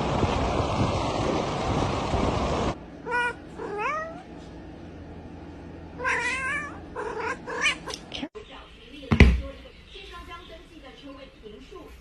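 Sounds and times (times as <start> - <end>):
cat meowing: 3.0 - 4.3, 6.0 - 8.1.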